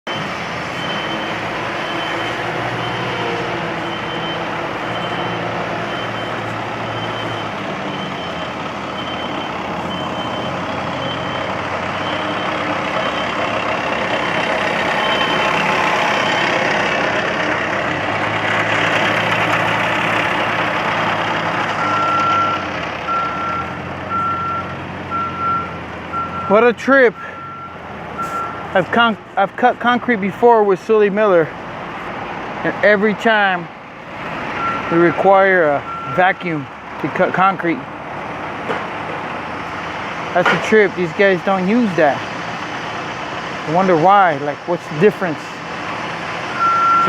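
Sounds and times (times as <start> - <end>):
lower-pitched reversing alarm: 0.1 - 16.6, 27.2 - 28.7, 46.6 - 47.0
reversing alarm beeping: 0.1 - 16.7, 21.8 - 28.8, 34.6 - 36.5, 46.6 - 47.0
engines running: 0.1 - 47.0.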